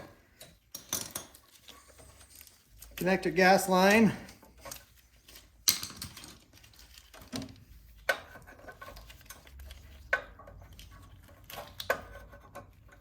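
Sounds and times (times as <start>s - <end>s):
metal parts clinking and tapping: 0.3s - 3.0s, 3.9s - 7.5s.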